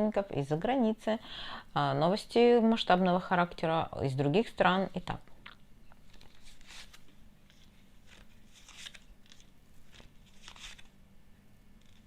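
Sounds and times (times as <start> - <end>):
low steady hum: 0.0 - 12.0
cards rustling and swishing: 6.0 - 11.0.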